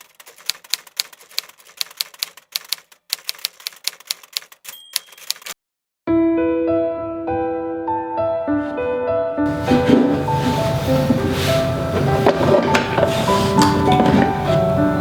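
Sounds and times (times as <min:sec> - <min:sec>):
typewriter keystroke clacks: 0:00.0 - 0:05.6
short ringing tone: 0:04.7 - 0:05.4
gentle piano music: 0:06.1 - 0:15.0.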